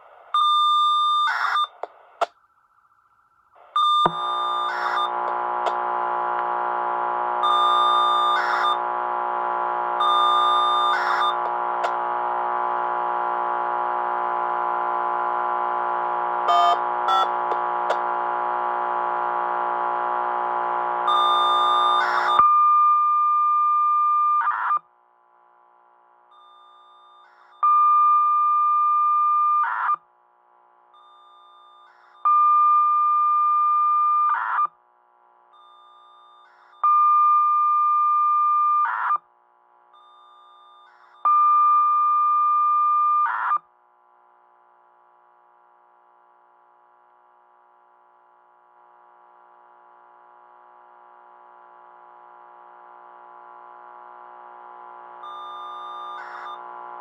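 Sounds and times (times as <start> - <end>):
high radio data tone: 1.1 - 2.3, 3.8 - 5.8, 7.4 - 8.9, 10.0 - 12.0, 16.5 - 18.0, 21.1 - 22.4, 55.3 - 57.0
faint hum: 39.3 - 57.0.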